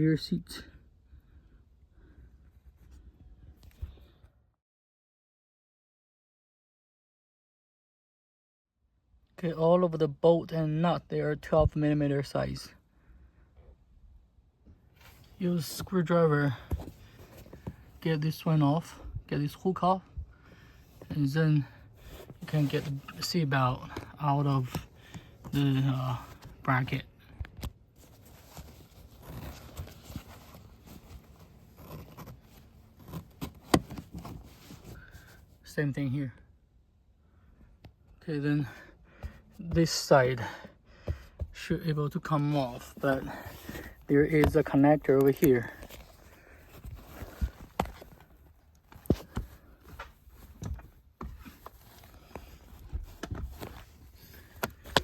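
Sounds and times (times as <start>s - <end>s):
rustling: 27.9s - 35.6s, 42.3s - 55.0s
seat belt hardware clicking: 31.4s - 34.5s
knocks and clicks of car trim: 33.0s - 34.3s.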